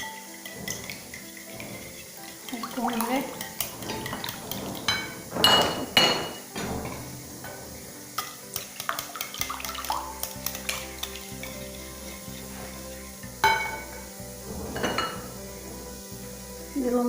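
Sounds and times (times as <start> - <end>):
utensil clinking against a bowl: 0.0 - 15.4.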